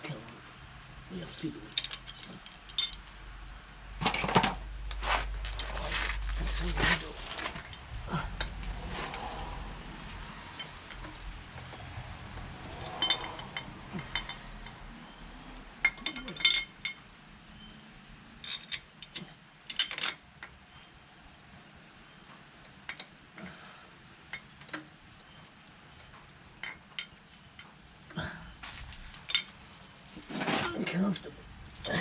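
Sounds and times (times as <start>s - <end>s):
small metal parts clinking: 1.6s - 3.2s, 4.0s - 17.0s, 18.4s - 20.9s, 28.6s - 32.0s.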